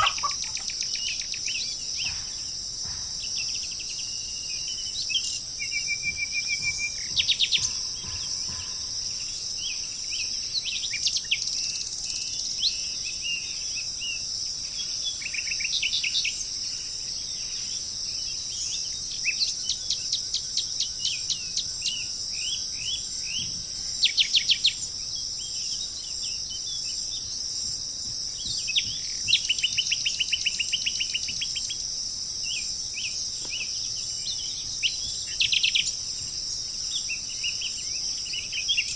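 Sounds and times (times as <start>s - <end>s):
insect chorus: 0.0s - 38.9s
songbirds chirping and trilling: 0.0s - 38.9s.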